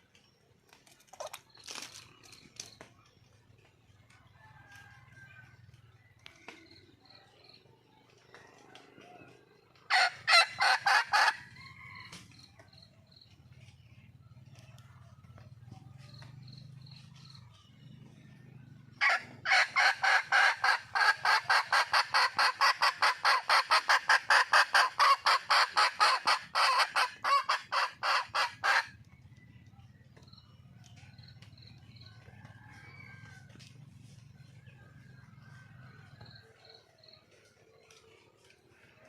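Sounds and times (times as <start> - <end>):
hen clucking: 9.9 - 11.6, 19.0 - 29.0.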